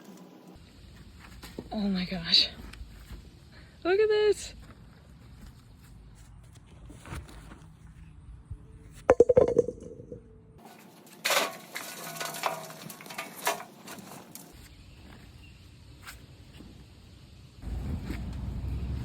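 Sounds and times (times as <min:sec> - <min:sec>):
rustling and scraping of soil: 0:00.0 - 0:09.0, 0:10.6 - 0:19.0
potatoes clattering in container: 0:11.2 - 0:14.4.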